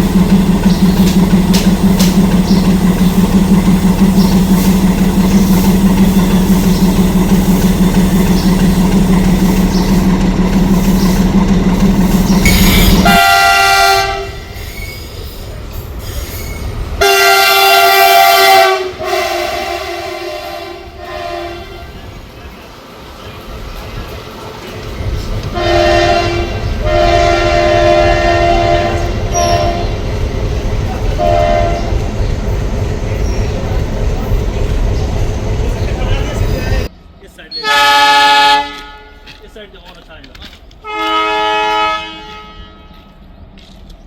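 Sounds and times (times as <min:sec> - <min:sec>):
train running with rhythmic beat: 0:00.0 - 0:44.0
locomotive air horn: 0:12.4 - 0:14.8, 0:17.0 - 0:22.0, 0:25.5 - 0:30.0, 0:31.2 - 0:32.0, 0:37.6 - 0:39.4, 0:40.8 - 0:43.1.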